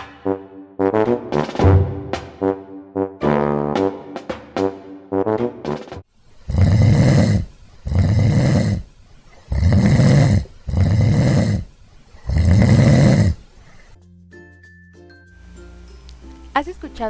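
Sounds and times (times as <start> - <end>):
person snoring loudly: 6.5 - 8.9, 9.5 - 13.5.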